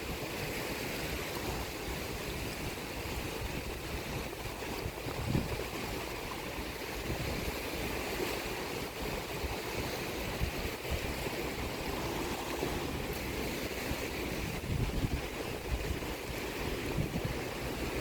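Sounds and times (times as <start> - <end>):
sea waves washing on shore: 0.0 - 18.0.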